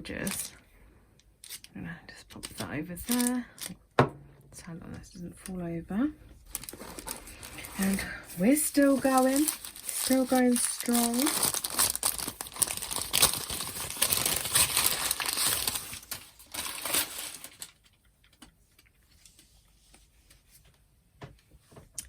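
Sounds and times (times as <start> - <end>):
packaging crinkling: 0.2 - 0.6, 2.4 - 3.8, 6.4 - 18.9.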